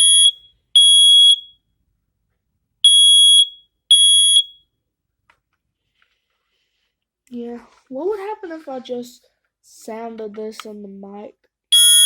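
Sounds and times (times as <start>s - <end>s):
smoke alarm beeping: 0.0s - 1.6s, 2.8s - 4.7s, 11.7s - 12.0s.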